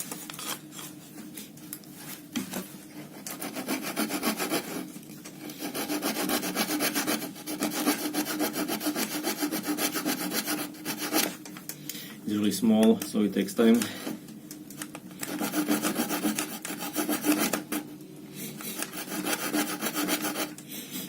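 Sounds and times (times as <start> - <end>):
saw cutting wood: 3.2 - 4.9, 5.6 - 11.3, 15.3 - 17.8, 18.8 - 20.6.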